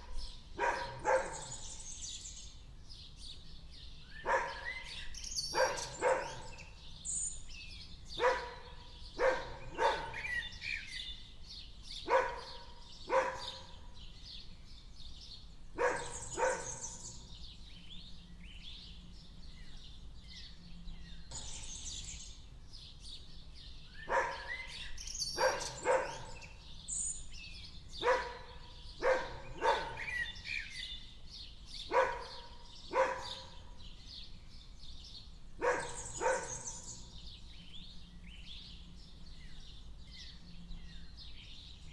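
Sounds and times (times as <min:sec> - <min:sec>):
birds chirping: 0:00.0 - 0:41.9
dog barking: 0:00.1 - 0:01.7, 0:04.2 - 0:04.9, 0:05.5 - 0:06.6, 0:08.2 - 0:10.5, 0:12.0 - 0:13.8, 0:15.8 - 0:17.2, 0:24.0 - 0:26.6, 0:28.0 - 0:30.4, 0:31.9 - 0:33.8, 0:35.6 - 0:37.1.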